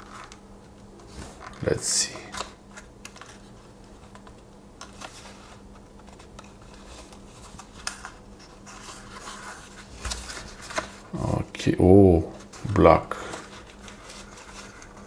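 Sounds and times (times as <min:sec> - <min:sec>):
low steady hum: 0:00.5 - 0:04.2, 0:08.4 - 0:14.5
paper wrapping rustling: 0:12.3 - 0:15.0.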